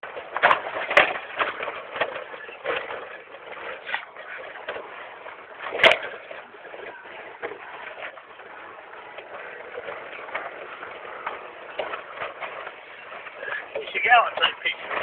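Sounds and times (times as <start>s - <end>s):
car driving over rough ground: 0.0s - 15.0s.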